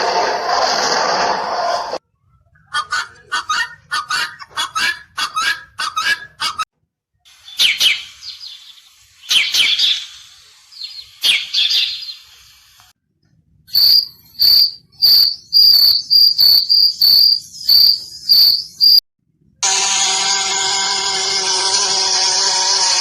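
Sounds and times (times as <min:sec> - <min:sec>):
birds calling: 0:02.5 - 0:06.6, 0:07.3 - 0:12.6, 0:13.7 - 0:19.0
high bird chirping: 0:02.5 - 0:06.6, 0:07.3 - 0:12.4, 0:13.7 - 0:19.0.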